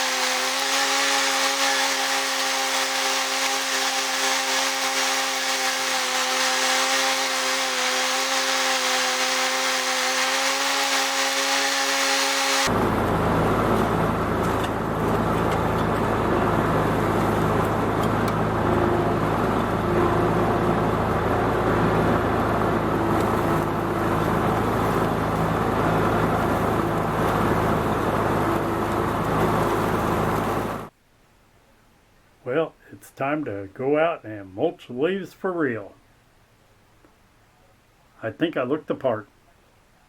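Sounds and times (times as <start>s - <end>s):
riding mower engine running: 0.0s - 30.9s.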